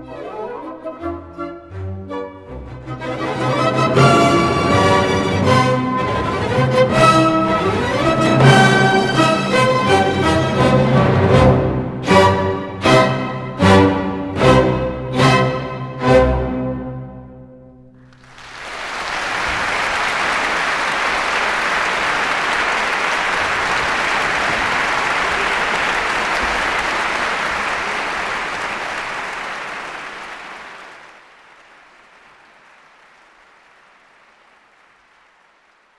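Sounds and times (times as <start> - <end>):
audience applause: 3.1 - 13.5, 18.0 - 35.9.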